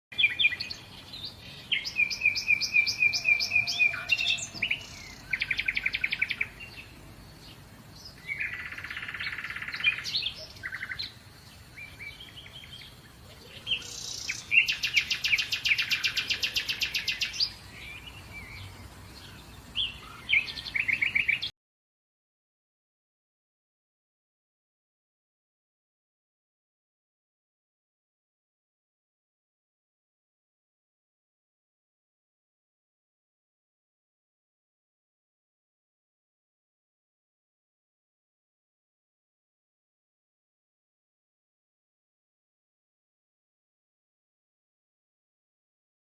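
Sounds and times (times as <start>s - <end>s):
birds singing: 0.1s - 21.5s.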